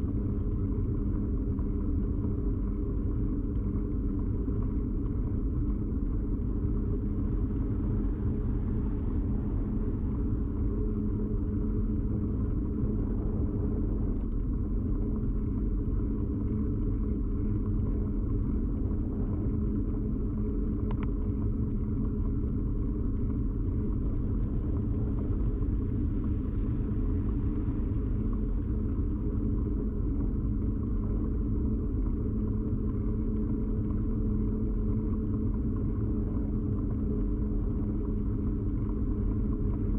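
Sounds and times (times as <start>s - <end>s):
bicycle riding vibration rumble: 0.0s - 39.9s
faint tick: 20.7s - 21.8s.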